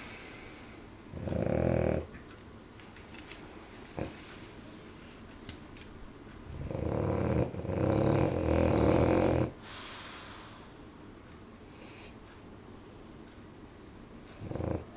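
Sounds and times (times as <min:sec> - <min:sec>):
dog snoring: 0:01.0 - 0:02.1, 0:04.0 - 0:04.2, 0:06.5 - 0:09.9, 0:11.7 - 0:12.2, 0:14.3 - 0:14.9
dog breathing: 0:03.9 - 0:04.5.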